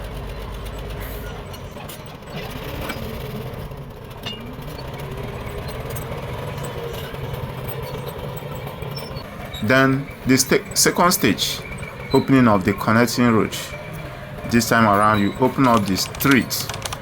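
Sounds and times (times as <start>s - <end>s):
bulldozer diesel engine running: 0.0s - 17.0s
light metal clanks: 4.1s - 9.6s.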